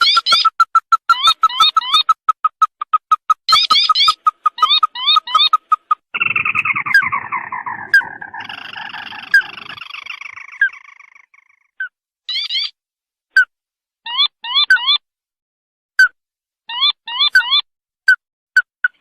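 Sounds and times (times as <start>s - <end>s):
crake calls: 0.0s - 11.7s.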